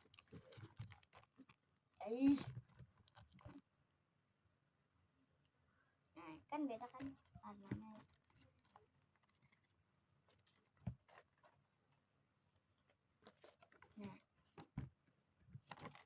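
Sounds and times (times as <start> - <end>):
faint taps and rustles: 6.8 - 11.6.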